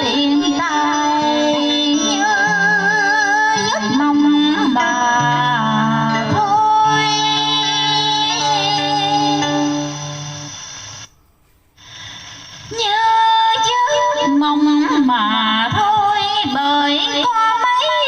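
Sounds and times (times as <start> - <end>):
person singing ornamented melody: 0.0 - 10.6.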